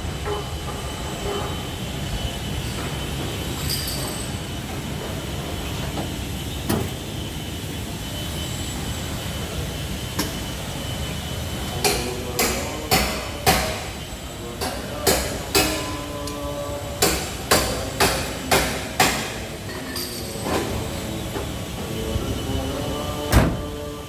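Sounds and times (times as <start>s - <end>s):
steady background noise: 0.0s - 24.0s
hammer striking sheet metal: 11.8s - 14.0s, 14.6s - 16.0s, 17.0s - 20.2s.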